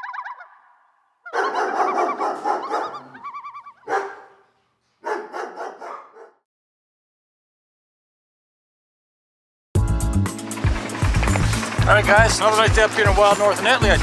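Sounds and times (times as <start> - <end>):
dogs barking and yelping: 1.3 - 6.4.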